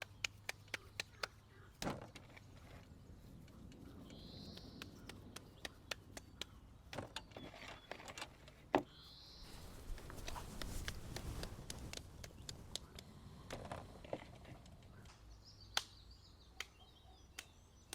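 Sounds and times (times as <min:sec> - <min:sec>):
wood fire crackling and popping: 0:09.5 - 0:15.2.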